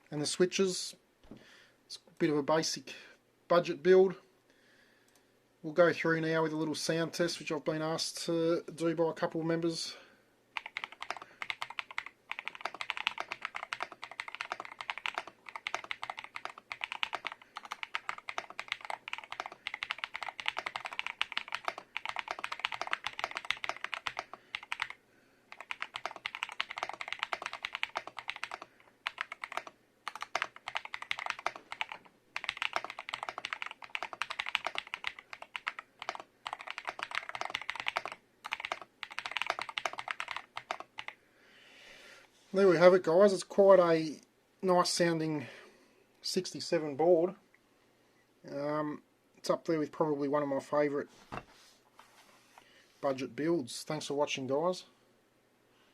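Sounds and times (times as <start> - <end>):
mechanical keyboard typing: 10.6 - 41.2.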